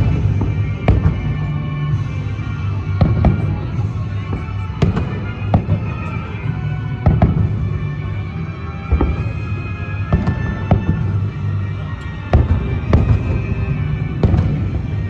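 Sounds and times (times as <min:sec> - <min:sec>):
loud show music: 0:00.0 - 0:15.0
fireworks bangs: 0:03.0 - 0:07.8, 0:11.8 - 0:15.0.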